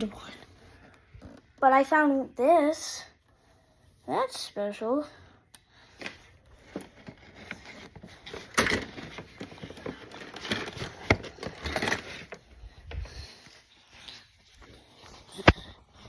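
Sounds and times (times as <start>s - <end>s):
rustling and scraping objects: 5.8s - 16.0s.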